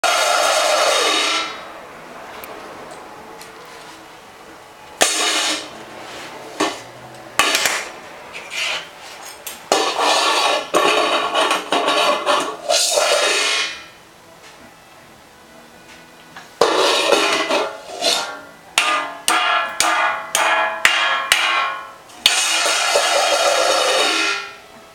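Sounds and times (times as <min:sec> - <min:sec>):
kitchen pots clanging and clattering: 0:16.6 - 0:24.6.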